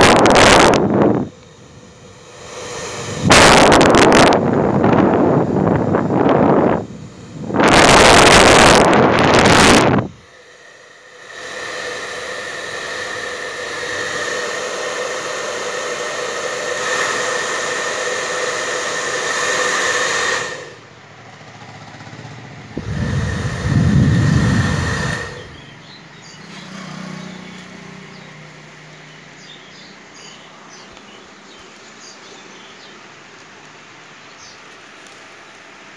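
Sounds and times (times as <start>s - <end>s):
air blast on microphone: 0.0s - 20.8s, 22.8s - 25.7s
hair dryer running: 0.0s - 20.9s, 21.7s - 25.7s.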